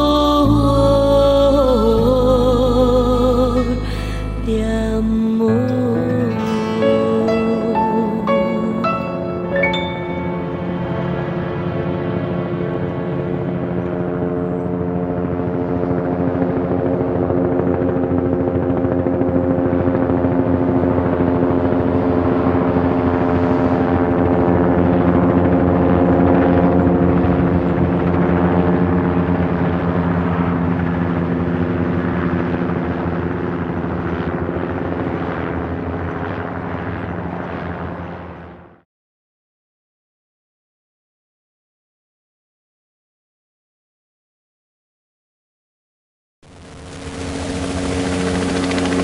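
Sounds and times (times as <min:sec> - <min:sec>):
helicopter rotor chopping: 0:10.4 - 0:38.7, 0:46.5 - 0:49.0.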